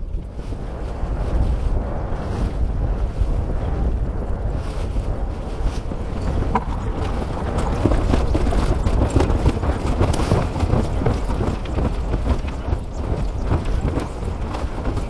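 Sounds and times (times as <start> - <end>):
wind buffeting microphone: 0.0 - 15.0
irregular knocks and slaps: 6.4 - 15.0.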